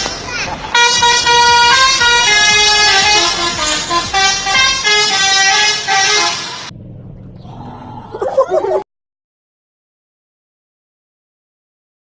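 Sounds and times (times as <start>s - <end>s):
multi-tone bus horn tune: 0.7s - 6.7s.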